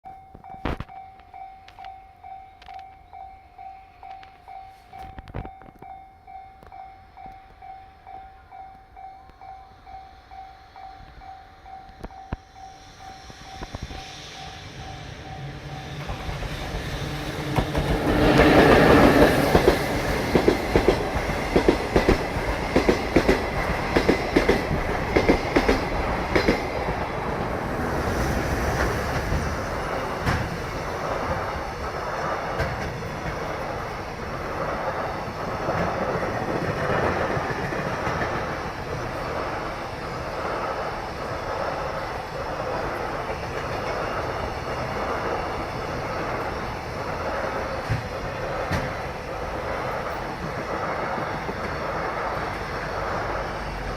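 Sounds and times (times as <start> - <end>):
electric locomotive passing: 0.1 - 53.9
rolling rumble of train cars: 0.1 - 53.9
wheels clacking over rail joints: 15.4 - 39.6, 42.8 - 53.4.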